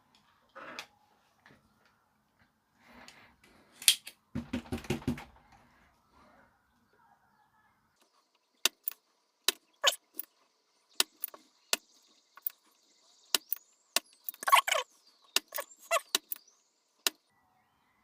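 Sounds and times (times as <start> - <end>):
desoldering clicks and taps: 8.3 - 10.3, 11.0 - 12.6, 13.3 - 14.6, 15.3 - 16.4.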